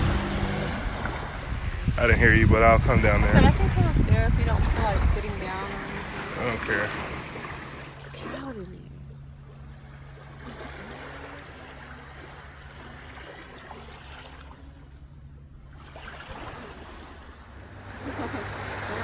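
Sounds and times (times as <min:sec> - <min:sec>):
surf washing onto beach: 0:00.0 - 0:08.0.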